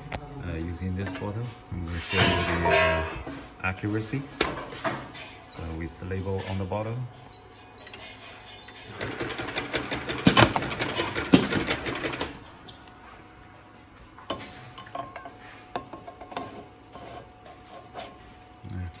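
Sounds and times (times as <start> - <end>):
labeling machine clatter: 8.8 - 12.4.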